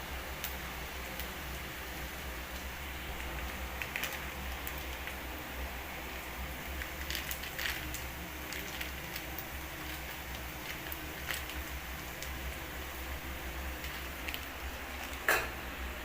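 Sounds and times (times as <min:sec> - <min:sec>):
food frying in hot oil: 0:00.0 - 0:16.0.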